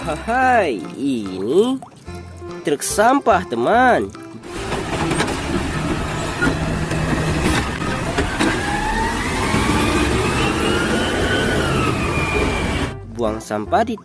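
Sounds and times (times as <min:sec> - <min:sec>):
truck engine revving: 0:04.4 - 0:13.0.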